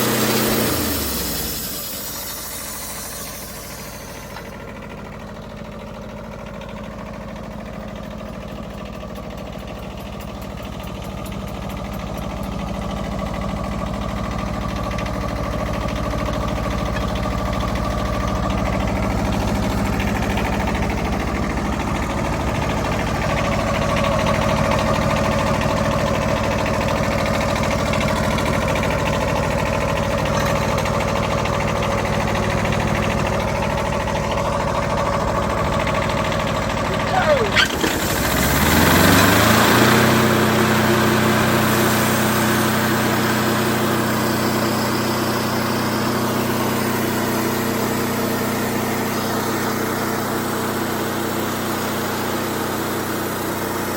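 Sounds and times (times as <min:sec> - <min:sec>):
band saw blade cutting log: 0:00.0 - 0:04.5, 0:37.0 - 0:40.1
diesel engine running under load: 0:00.0 - 0:53.9.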